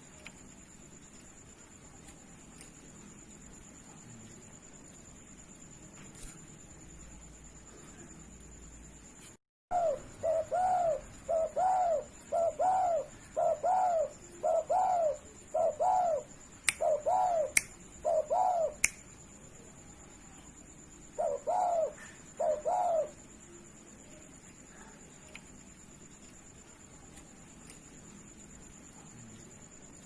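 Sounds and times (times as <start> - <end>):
dove cooing: 9.7 - 18.8, 21.2 - 23.2
sharp clicks: 18.8 - 19.1.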